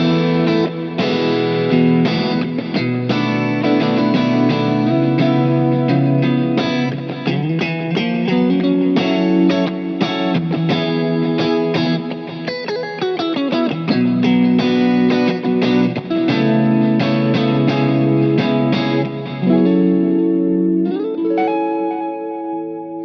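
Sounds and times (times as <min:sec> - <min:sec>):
distorted electric guitar: 0:00.0 - 0:23.0.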